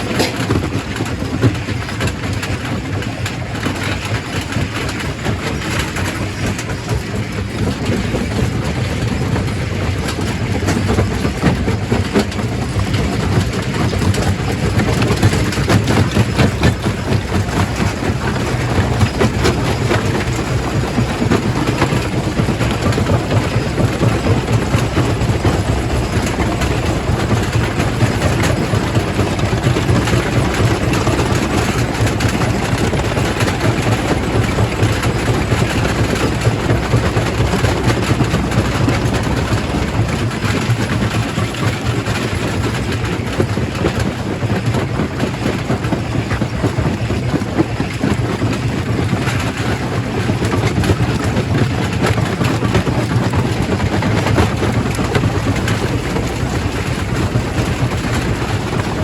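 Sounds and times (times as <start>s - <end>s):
rock crusher machine drone: 3.7s - 43.9s.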